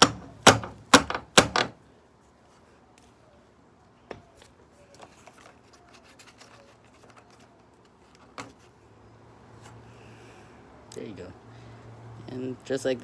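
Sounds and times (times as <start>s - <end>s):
sharp metal taps: 0.0s - 1.8s.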